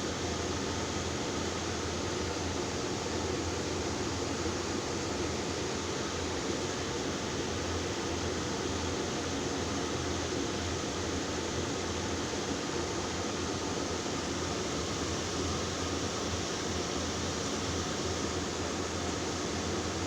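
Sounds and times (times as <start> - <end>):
electric fan hiss and hum: 0.0 - 20.0.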